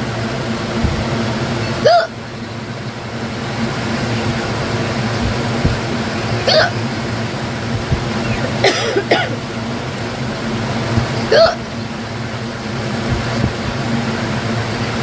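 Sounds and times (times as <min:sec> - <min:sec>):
steady low hum: 0:00.0 - 0:15.0
woman hiccupping: 0:01.8 - 0:02.2, 0:06.4 - 0:06.8, 0:11.2 - 0:11.6.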